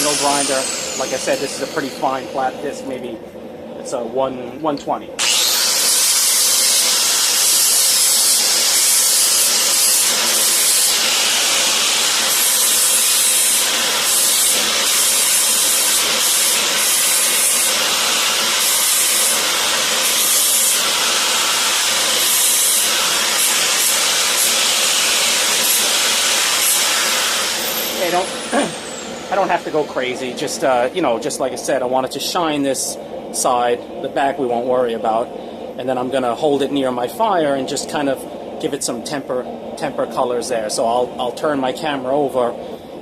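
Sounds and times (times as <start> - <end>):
angle grinder sanding steel: 0.0 - 2.8, 5.2 - 31.0.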